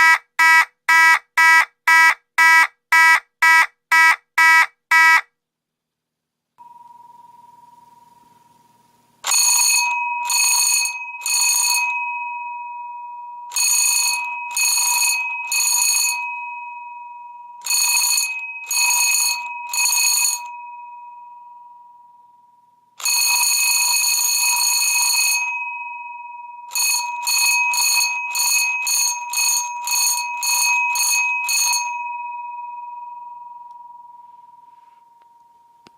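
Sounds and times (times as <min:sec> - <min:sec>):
fire alarm bell ringing: 0:09.2 - 0:22.1, 0:23.0 - 0:35.5.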